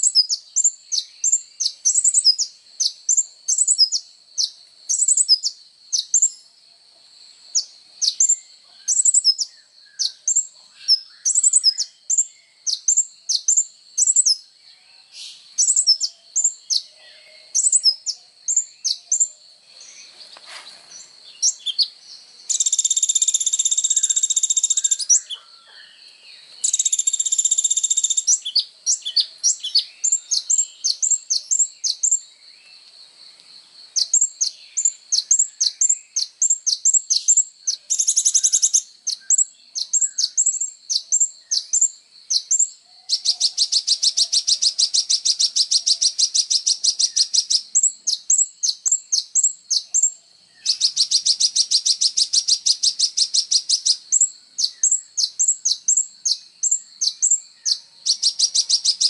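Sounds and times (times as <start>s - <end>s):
sunbird chirping: 0.0s - 59.0s
fast buzzing bird trills: 20.8s - 25.4s, 26.6s - 32.2s, 34.0s - 59.0s.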